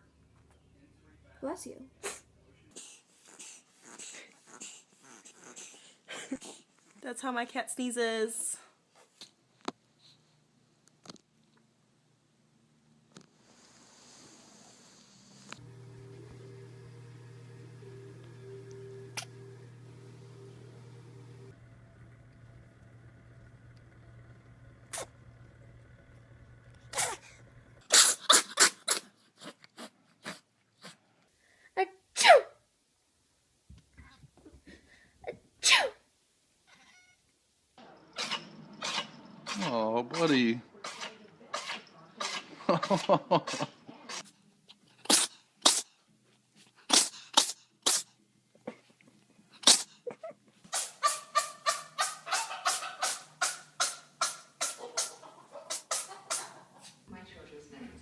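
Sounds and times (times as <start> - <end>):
cat sneezing: 2.0 - 5.8, 26.9 - 27.3, 27.9 - 30.4, 32.2 - 32.6, 35.6 - 36.0, 38.2 - 39.7, 40.8 - 44.3, 45.0 - 46.0, 46.8 - 48.2, 49.6 - 51.2, 52.0 - 56.5.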